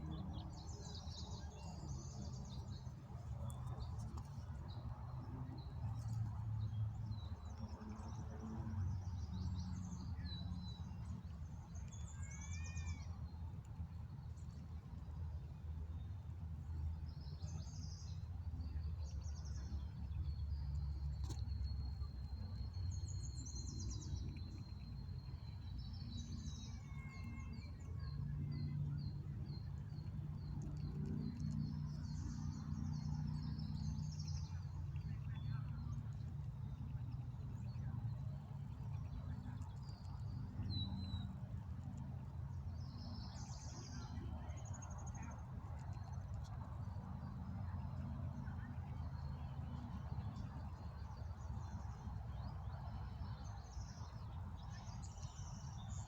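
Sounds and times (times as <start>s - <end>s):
steady low rumble: 13.6s - 52.6s.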